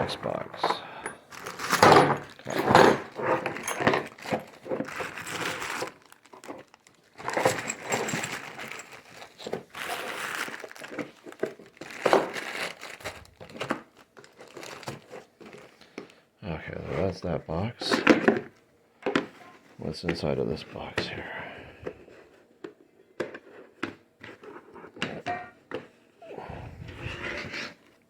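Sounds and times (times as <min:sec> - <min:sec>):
packing material crinkling: 0:01.3 - 0:15.8.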